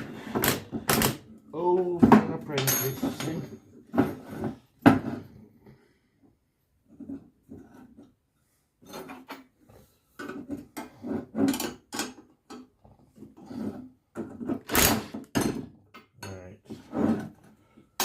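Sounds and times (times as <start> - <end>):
metal parts clanking and scraping: 2.2 - 5.4, 8.8 - 9.6, 10.2 - 18.0.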